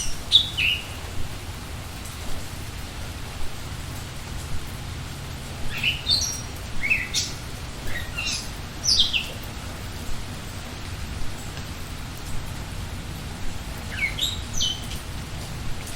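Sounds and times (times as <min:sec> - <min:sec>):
songbird singing: 0:00.0 - 0:01.0, 0:05.6 - 0:09.5, 0:13.9 - 0:15.0
rain falling: 0:00.0 - 0:15.9.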